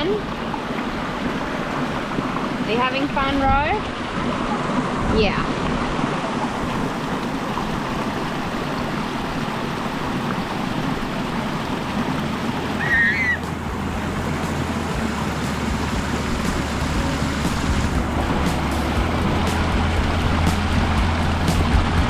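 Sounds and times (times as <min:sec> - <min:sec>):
waterfall rushing: 0:00.0 - 0:22.0
low steady hum: 0:11.0 - 0:22.0.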